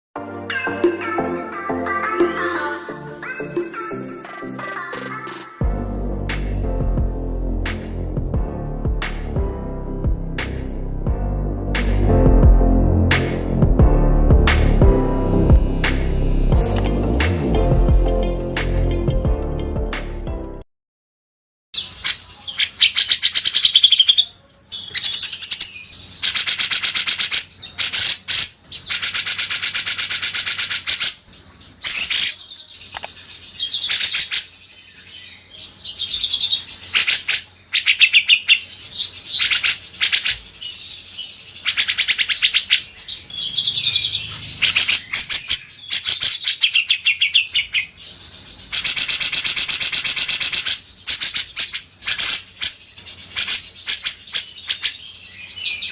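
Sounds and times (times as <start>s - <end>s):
bird rattling trills: 41.6s - 46.8s.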